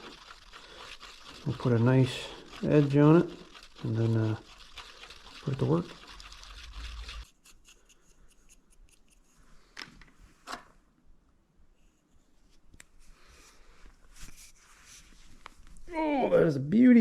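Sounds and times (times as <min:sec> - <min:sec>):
rubbing scrape: 0:00.0 - 0:09.5.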